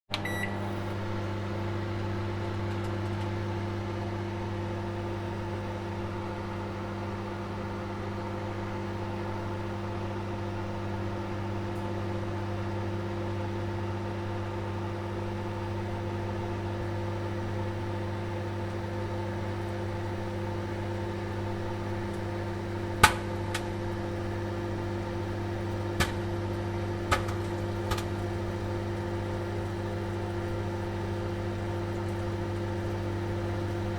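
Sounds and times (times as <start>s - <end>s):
microwave oven humming: 0.1s - 33.9s
popcorn kernels popping: 22.9s - 23.8s, 25.7s - 28.6s.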